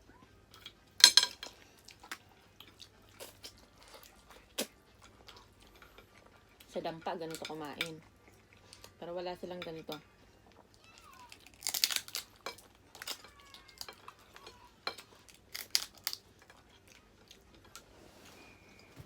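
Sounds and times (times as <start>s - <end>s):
shells cracking: 0.6s - 1.5s, 11.3s - 16.3s
crunchy chewing: 1.6s - 6.7s, 10.4s - 17.9s.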